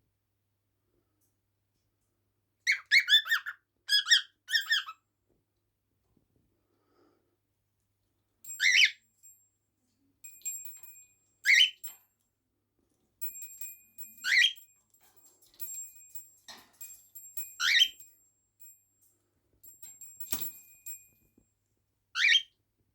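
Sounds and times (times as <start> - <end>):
animal squeaky calls: 2.7 - 5.0.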